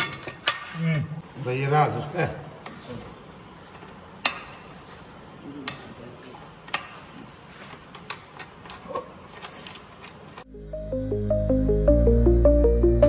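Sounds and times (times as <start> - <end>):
electronic music: 10.5 - 13.0.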